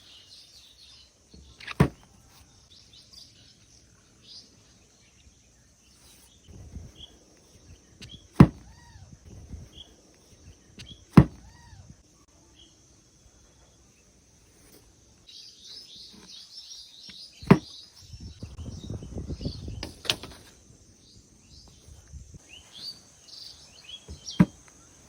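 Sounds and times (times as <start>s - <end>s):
birds chirping faintly: 0.0s - 25.0s
steady high hiss: 18.0s - 25.0s.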